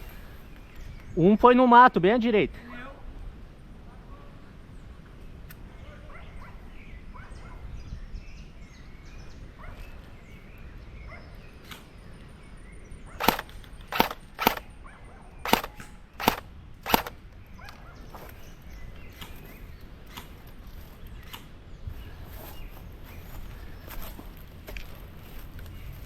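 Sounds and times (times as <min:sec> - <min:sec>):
airsoft gun shots: 0:13.2 - 0:14.7, 0:15.4 - 0:17.2.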